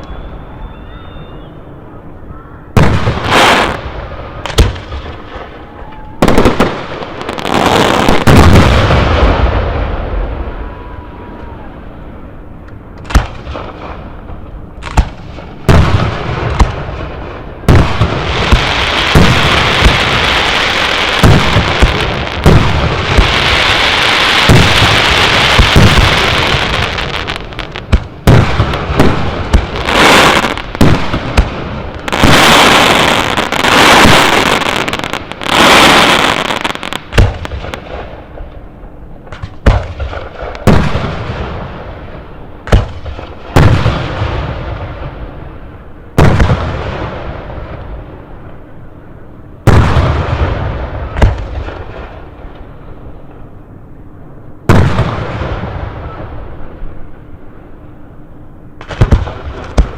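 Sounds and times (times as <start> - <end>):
firework booms: 2.7 - 5.6, 6.2 - 10.9, 13.0 - 38.5, 39.3 - 45.3, 46.2 - 47.9, 49.6 - 52.2, 54.7 - 56.6, 58.8 - 59.9
firework crackling: 2.8 - 11.8, 13.0 - 38.5.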